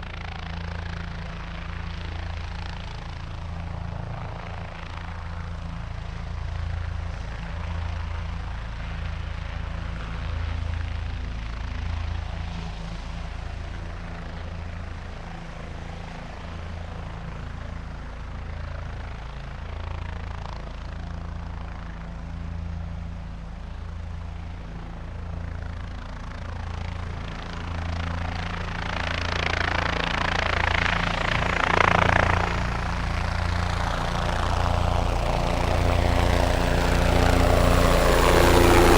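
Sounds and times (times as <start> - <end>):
helicopter rotor beat: 0.0 - 38.9
turbine whine: 27.8 - 38.9.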